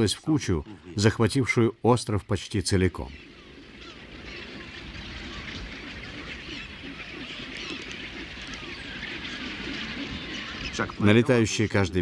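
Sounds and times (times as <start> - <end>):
seabird colony squawking: 2.8 - 12.0.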